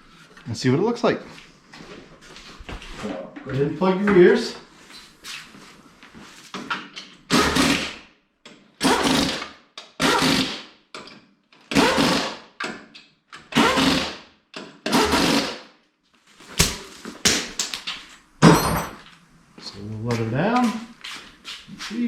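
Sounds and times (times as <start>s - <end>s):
impact wrench hammering: 18.4s - 19.0s.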